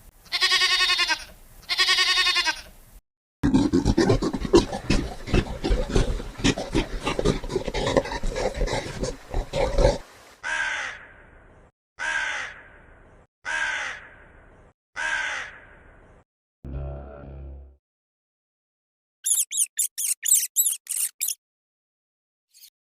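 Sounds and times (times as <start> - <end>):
farm animal calls: 0.3 - 2.7.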